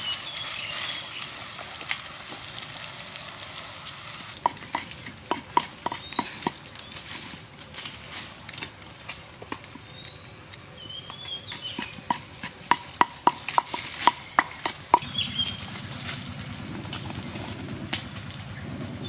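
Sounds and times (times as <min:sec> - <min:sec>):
small birds chirping: 0:00.0 - 0:01.4, 0:05.6 - 0:07.2, 0:09.7 - 0:12.2, 0:13.3 - 0:16.2.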